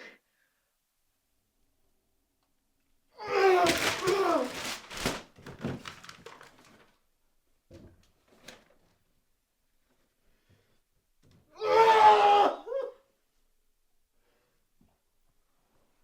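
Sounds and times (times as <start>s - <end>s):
person crying out: 3.2s - 4.6s, 11.6s - 13.0s.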